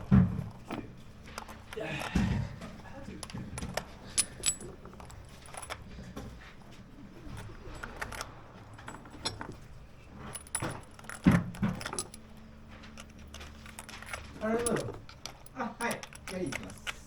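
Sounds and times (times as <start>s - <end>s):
metallic clinks of gear handled: 2.9s - 6.2s, 7.2s - 17.0s.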